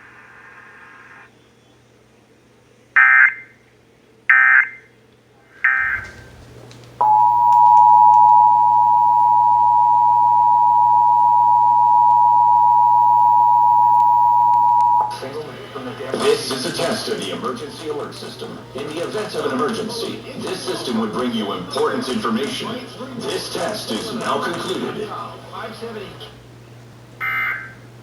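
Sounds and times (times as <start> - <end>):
two-tone attention signal: 7.0 - 15.1, 27.2 - 27.8.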